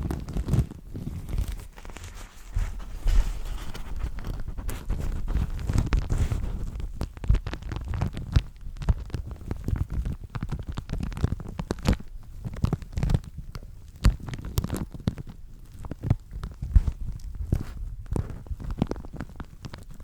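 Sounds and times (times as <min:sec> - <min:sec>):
paper napkin crinkling: 0:00.1 - 0:11.8.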